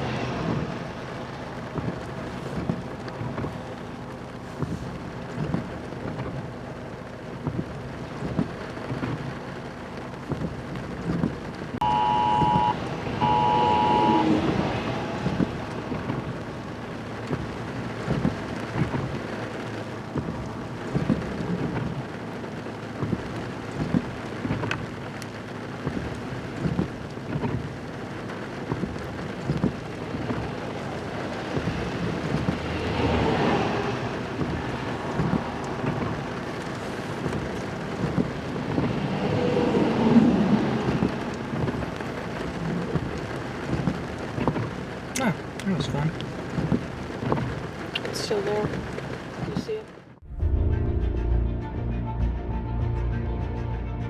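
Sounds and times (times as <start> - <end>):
rain falling: 0.0 - 50.4
sharp raindrop strikes: 0.0 - 50.7
short electronic beeps: 11.8 - 15.3.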